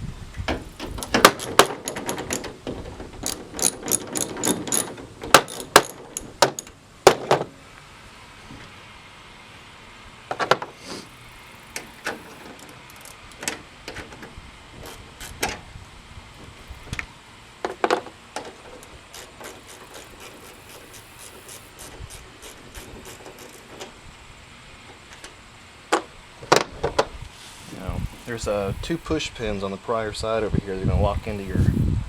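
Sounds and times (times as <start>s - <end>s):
hand tools clicking and knocking: 0.5s - 7.4s, 11.5s - 15.6s, 17.7s - 24.0s.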